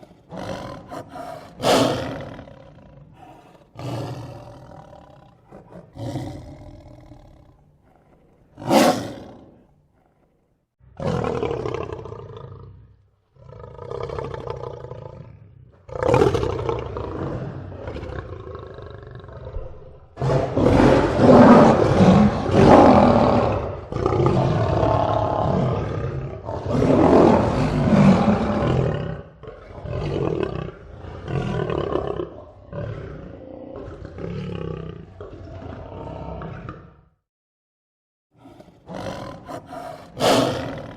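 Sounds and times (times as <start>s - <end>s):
lion grunting calls: 0.0s - 10.4s, 38.4s - 40.9s
lion roaring: 0.0s - 37.1s, 38.4s - 40.9s.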